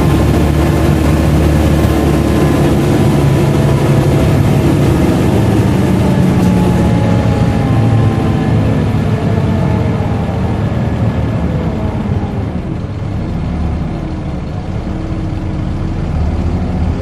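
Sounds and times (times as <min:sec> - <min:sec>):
higher tones drifting lower: 0:00.0 - 0:12.5
bus diesel engine drone: 0:00.0 - 0:17.0.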